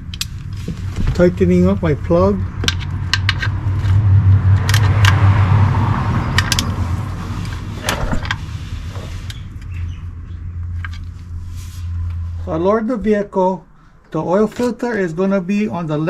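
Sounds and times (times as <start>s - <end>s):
low machine hum: 6.8s - 14.4s.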